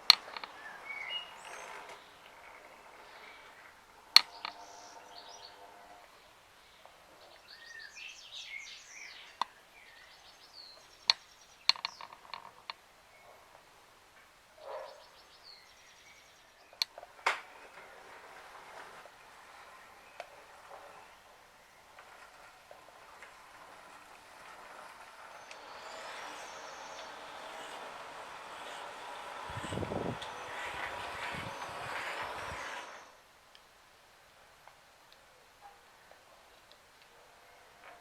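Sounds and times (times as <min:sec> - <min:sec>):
sharp clicks and knocks: 0:00.0 - 0:00.6, 0:11.1 - 0:12.8
birds chirping and singing: 0:00.1 - 0:05.8, 0:25.2 - 0:33.2.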